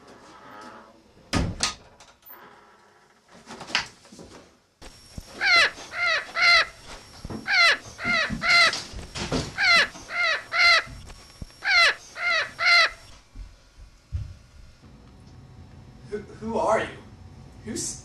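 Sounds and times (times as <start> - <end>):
crow cawing: 5.3 - 6.8, 7.4 - 8.8, 9.5 - 11.0, 11.6 - 13.1.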